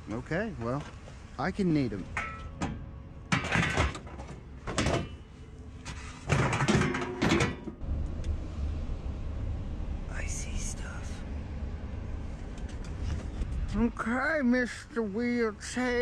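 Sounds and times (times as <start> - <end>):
steady low hum: 0.0 - 16.0
folding chairs clattering: 2.2 - 5.2, 5.8 - 7.8.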